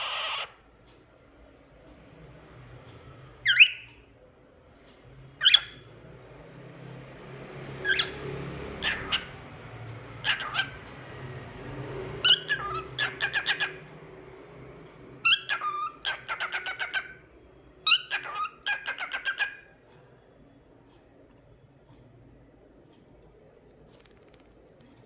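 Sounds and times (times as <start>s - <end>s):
cockatiel chirping: 0.0s - 0.6s, 3.4s - 4.0s, 5.4s - 5.9s, 7.8s - 8.2s, 8.8s - 9.5s, 10.2s - 10.9s, 12.2s - 13.9s, 15.2s - 17.2s, 17.8s - 19.7s.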